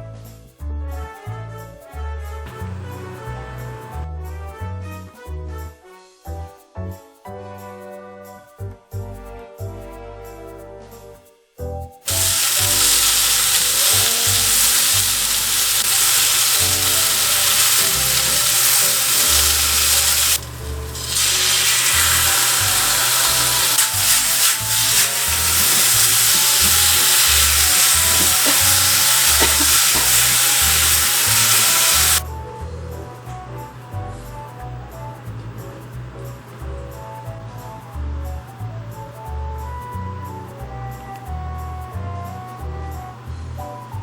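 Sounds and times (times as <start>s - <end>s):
background music: 0.0s - 44.0s
food sizzling in a frying pan: 12.1s - 32.2s.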